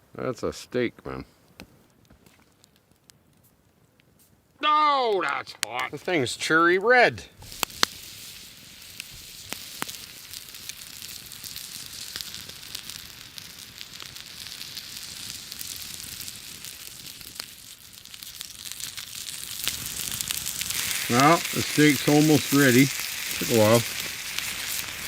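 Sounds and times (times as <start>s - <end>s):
campfire crackling and popping: 1.4s - 25.0s
steak sizzling on hot rock: 5.3s - 25.0s.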